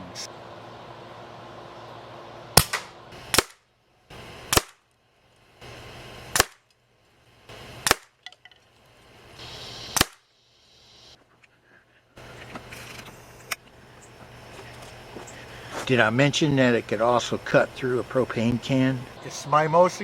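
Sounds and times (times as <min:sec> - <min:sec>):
air rifle shots: 0:02.6 - 0:03.6, 0:04.5 - 0:04.8, 0:06.3 - 0:06.6, 0:07.8 - 0:08.2, 0:09.9 - 0:10.3.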